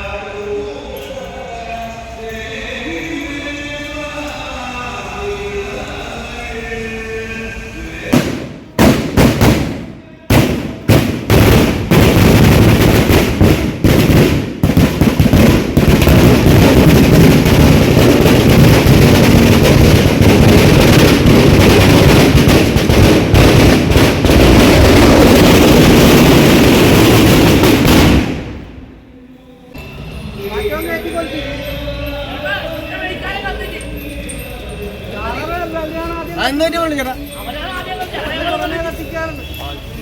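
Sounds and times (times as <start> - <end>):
firecrackers going off: 7.7 - 29.1.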